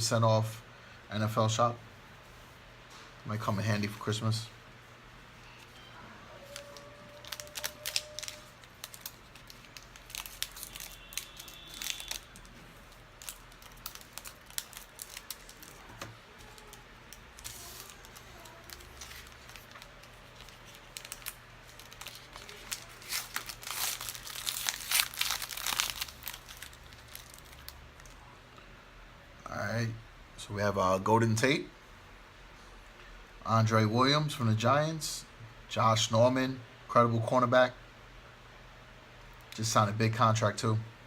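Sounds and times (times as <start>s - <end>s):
foil wrapper crinkling and tearing: 6.4s - 28.2s.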